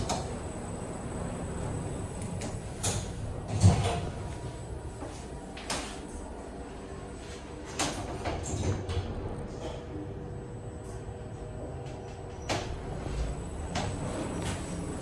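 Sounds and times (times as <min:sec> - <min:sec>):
lift humming: 0:00.0 - 0:08.2, 0:08.8 - 0:15.0.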